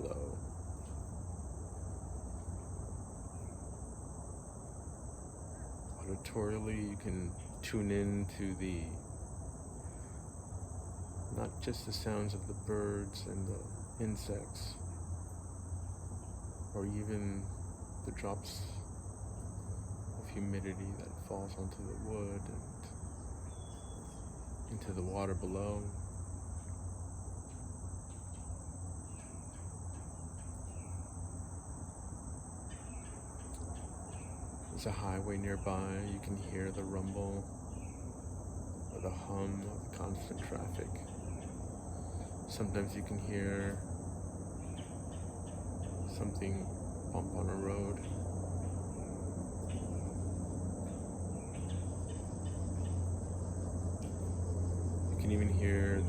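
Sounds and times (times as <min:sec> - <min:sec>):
distant highway traffic rumble: 0:00.0 - 0:56.0
insects trilling: 0:00.0 - 0:56.0
faint bird chirps: 0:02.4 - 0:03.7, 0:20.2 - 0:26.0, 0:26.6 - 0:31.3, 0:32.6 - 0:38.1.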